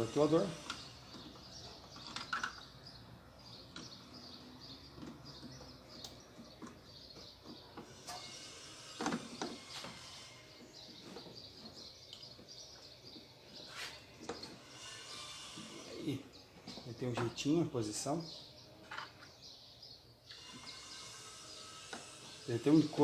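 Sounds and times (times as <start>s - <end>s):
birds chirping: 0.0s - 23.0s
clicks and knocks of parts handled: 0.6s - 2.7s.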